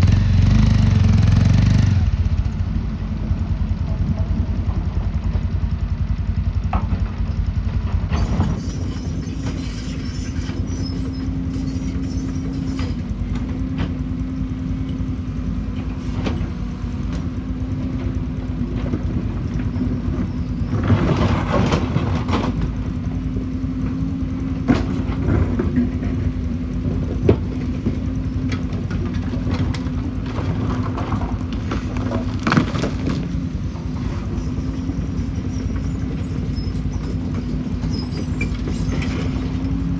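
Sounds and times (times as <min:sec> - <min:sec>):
diesel engine running: 0:00.0 - 0:39.9
sharp knocks and clanks: 0:06.5 - 0:09.6.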